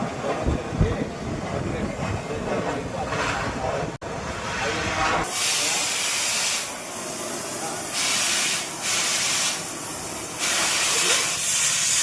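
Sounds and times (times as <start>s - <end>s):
gas cutting torch hissing: 5.2s - 12.0s.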